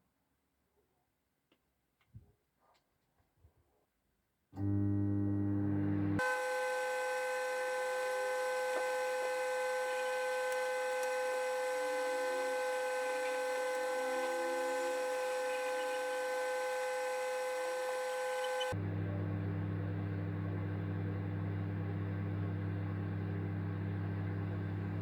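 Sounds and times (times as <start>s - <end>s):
electrical hum of appliance: 4.6s - 25.0s.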